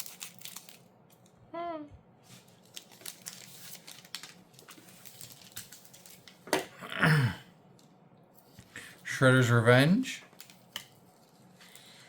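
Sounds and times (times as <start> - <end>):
foil wrapper crinkling: 0.0 - 0.9, 2.3 - 6.5.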